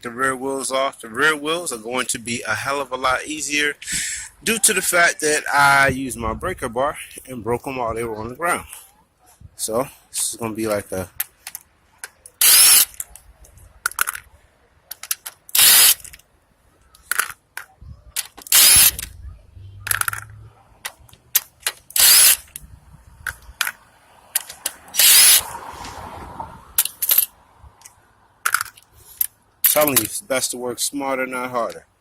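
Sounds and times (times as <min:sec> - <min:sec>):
power tool spinning out bolts: 0:12.4 - 0:13.0, 0:15.5 - 0:16.1, 0:18.5 - 0:19.0, 0:21.8 - 0:22.5, 0:24.4 - 0:25.4.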